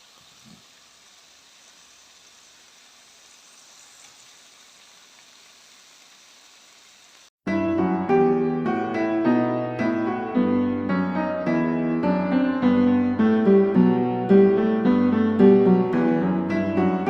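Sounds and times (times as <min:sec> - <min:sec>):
food sizzling in a pan: 0:00.0 - 0:07.4
piano music: 0:07.4 - 0:17.0.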